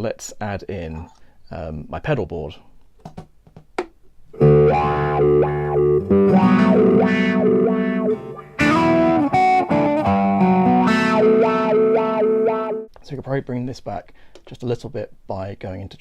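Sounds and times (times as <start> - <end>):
acoustic guitar strummed with effects: 4.3 - 12.9.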